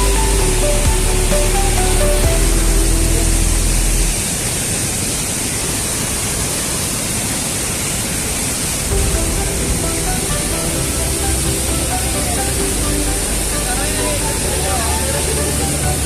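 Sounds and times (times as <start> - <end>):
background music with deep bass: 0.0 - 4.3, 8.9 - 16.0
waterfall roaring: 0.0 - 16.0.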